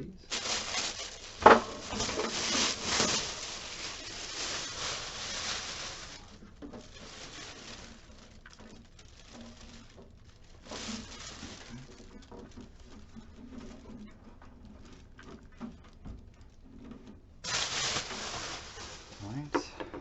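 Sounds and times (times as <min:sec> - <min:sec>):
packaging rustling: 0:00.3 - 0:14.1, 0:17.4 - 0:19.5.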